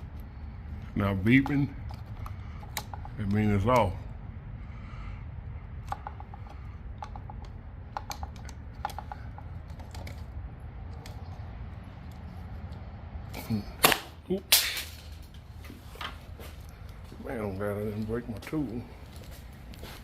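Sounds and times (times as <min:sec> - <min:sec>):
hand tools clicking and tapping: 0:01.2 - 0:03.9, 0:05.8 - 0:11.4.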